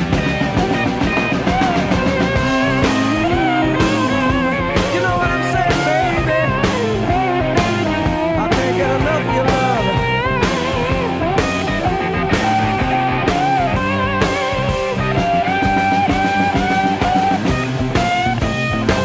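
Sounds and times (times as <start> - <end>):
electric guitar lines: 0.0 - 19.0
rock song instrumental: 0.0 - 19.0.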